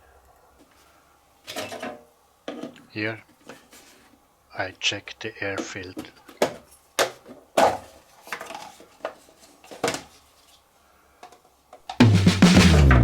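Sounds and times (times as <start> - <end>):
music with drums: 12.0 - 13.0.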